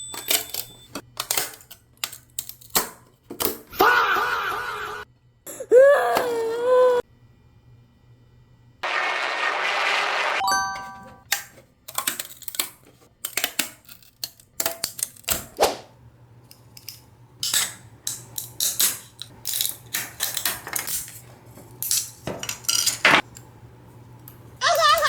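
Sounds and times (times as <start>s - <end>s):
plastic toy clicking and clattering: 0.1s - 3.6s, 11.3s - 15.5s, 16.5s - 21.2s.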